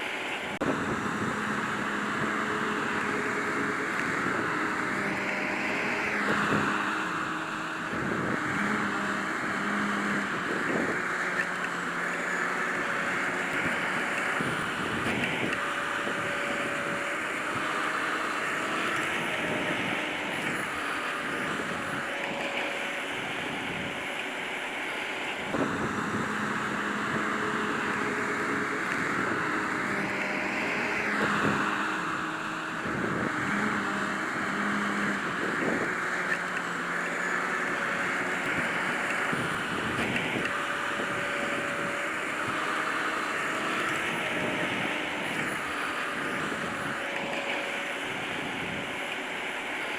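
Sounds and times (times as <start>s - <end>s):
harvester engine hum: 0.0s - 49.9s.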